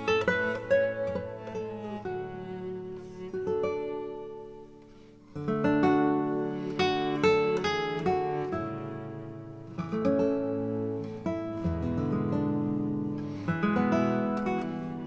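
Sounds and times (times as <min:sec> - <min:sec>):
acoustic guitar chords: 0:00.0 - 0:15.0.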